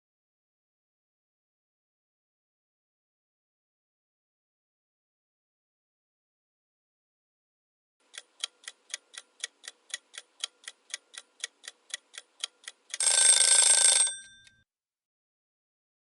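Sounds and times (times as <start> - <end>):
clock ticking: 8.0 - 14.6
alarm bell ringing: 13.0 - 14.6.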